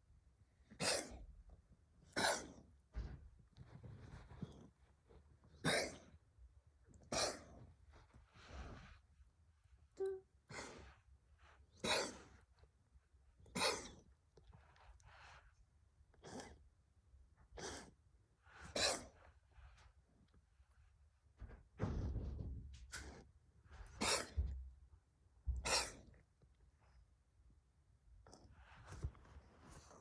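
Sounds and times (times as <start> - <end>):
cat hacking coughs: 0.7 - 1.2, 2.1 - 2.6, 5.6 - 6.2, 7.1 - 7.6, 11.8 - 12.3, 13.5 - 14.0, 17.6 - 17.9, 18.7 - 19.1, 23.9 - 24.6, 25.5 - 26.2.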